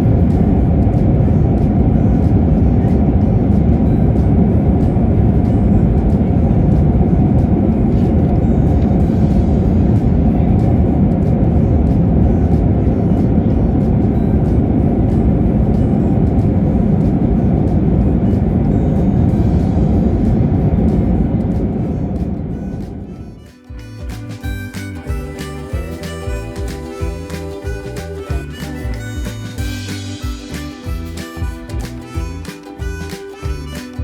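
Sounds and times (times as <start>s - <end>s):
jet cabin engine rumble: 0.0s - 23.2s.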